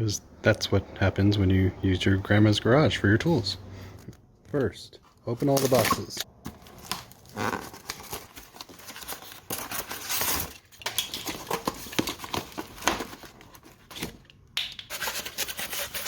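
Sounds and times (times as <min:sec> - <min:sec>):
cardboard packaging tearing: 0:05.4 - 0:14.2, 0:14.9 - 0:16.0.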